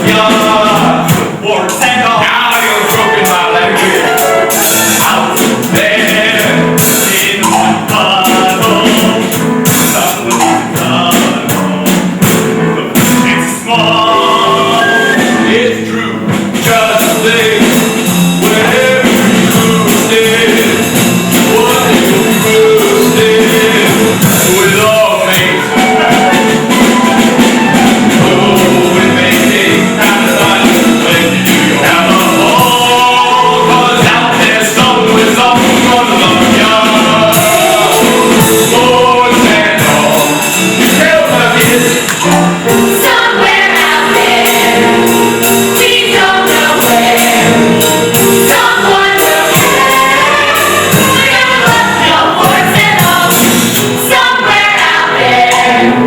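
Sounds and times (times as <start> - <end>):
instrumental accompaniment: 0.0 - 56.0
voices singing a show tune: 0.0 - 56.0.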